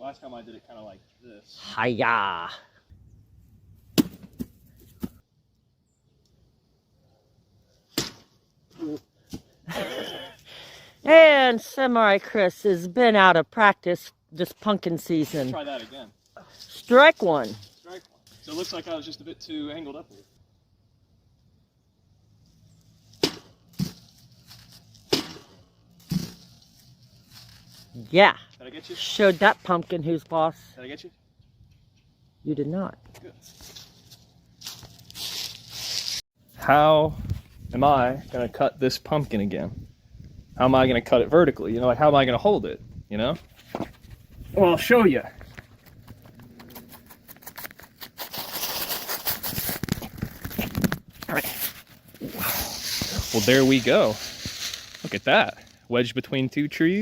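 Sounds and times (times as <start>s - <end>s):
rustling and scraping: 22.4s - 28.1s, 33.1s - 36.2s, 43.3s - 55.9s.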